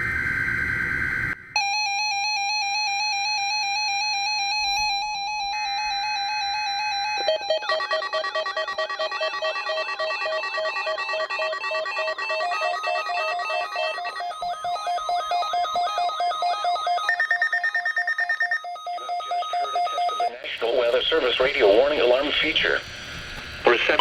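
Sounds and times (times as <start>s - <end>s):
electronic warning alarm tones: 0.0s - 24.0s
fast repeating warble: 5.2s - 24.0s.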